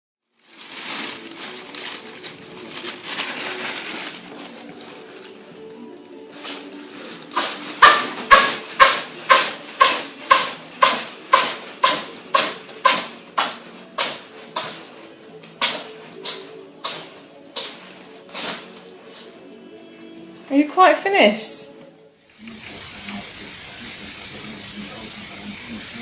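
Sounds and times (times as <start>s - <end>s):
cat sneezing: 7.4s - 14.8s, 15.6s - 17.8s.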